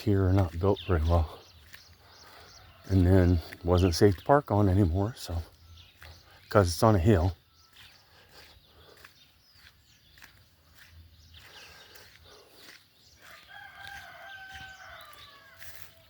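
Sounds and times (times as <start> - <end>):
rooster crowing: 13.2 - 16.0.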